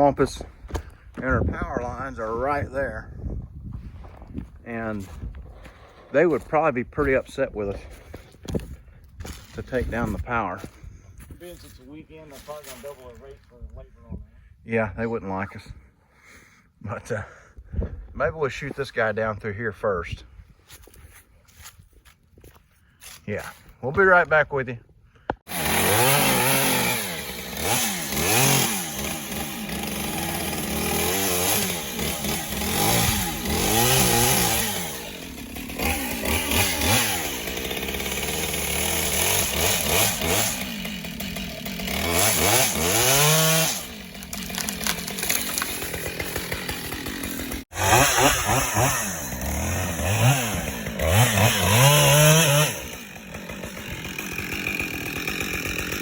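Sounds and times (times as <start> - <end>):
chainsaw engine revving: 25.4 - 56.0.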